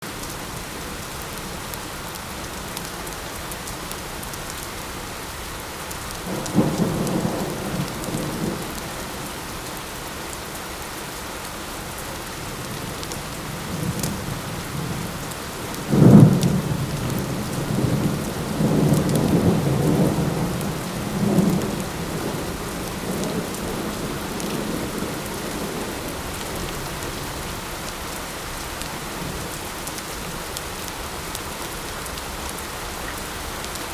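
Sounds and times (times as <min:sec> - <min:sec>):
light rain falling: 0:00.0 - 0:33.9
thunder rolling: 0:15.8 - 0:26.1.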